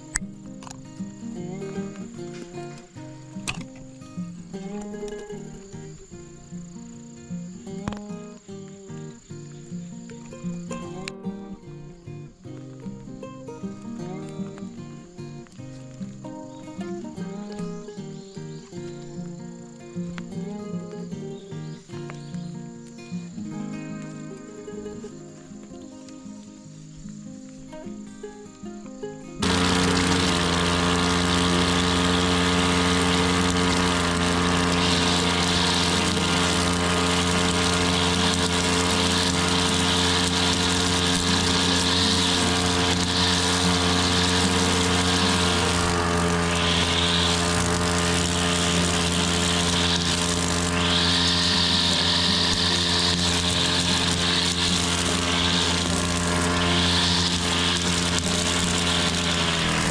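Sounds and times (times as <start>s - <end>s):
petrol grass mower running: 0.0s - 11.1s, 29.4s - 59.9s
rising and falling hiss: 29.4s - 59.9s.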